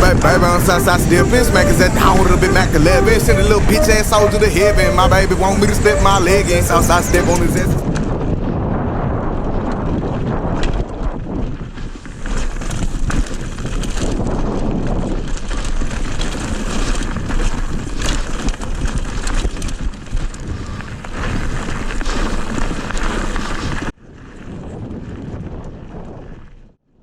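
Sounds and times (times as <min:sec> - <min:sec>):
wind buffeting microphone: 0:00.0 - 0:15.6.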